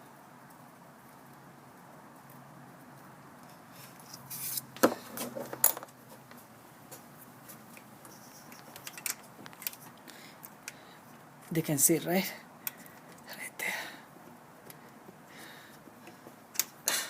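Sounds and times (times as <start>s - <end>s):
metal tools clinking: 8.4s - 9.9s.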